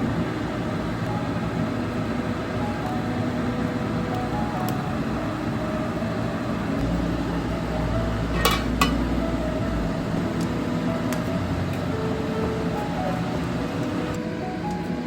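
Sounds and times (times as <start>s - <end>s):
steady background noise: 0.0s - 15.0s
dishware clinking: 8.3s - 9.2s.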